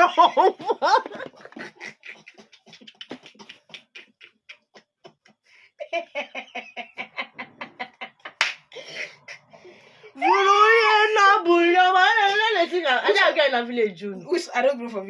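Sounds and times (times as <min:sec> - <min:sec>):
person laughing in breathy gasps: 0:00.0 - 0:05.9.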